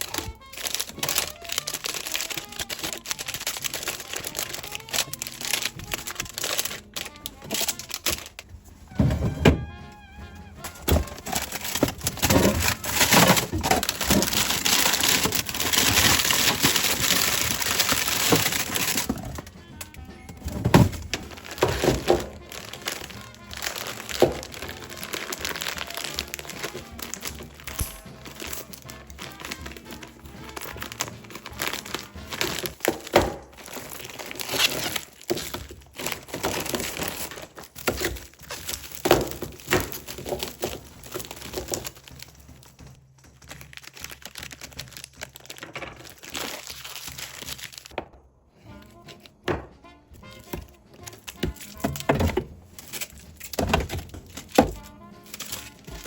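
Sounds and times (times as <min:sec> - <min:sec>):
packaging crinkling: 0:00.0 - 0:48.0, 0:50.2 - 0:56.0
background music: 0:00.0 - 0:56.0
items knocking and clattering: 0:00.0 - 0:56.0.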